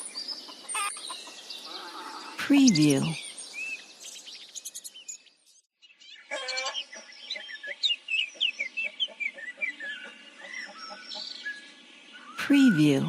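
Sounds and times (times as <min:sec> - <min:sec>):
faint chickens: 0:00.0 - 0:02.4, 0:06.1 - 0:13.0
small birds chirping: 0:00.0 - 0:13.0.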